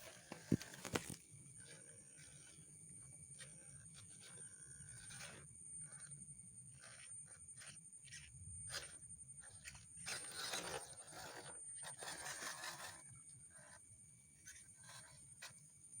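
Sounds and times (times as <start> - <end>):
tyres crunching on soil and stones: 0.0 - 1.2.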